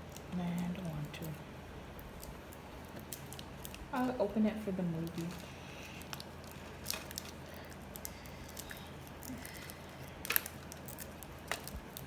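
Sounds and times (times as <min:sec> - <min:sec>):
snack packaging crackling: 0:00.0 - 0:12.0.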